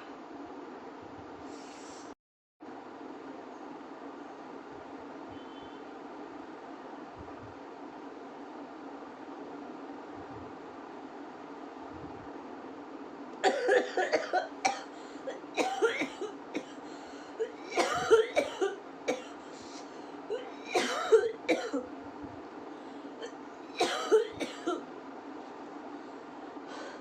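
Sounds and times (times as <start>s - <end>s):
woman coughing: 13.4s - 16.8s, 17.4s - 19.4s, 20.3s - 21.9s, 23.2s - 24.8s.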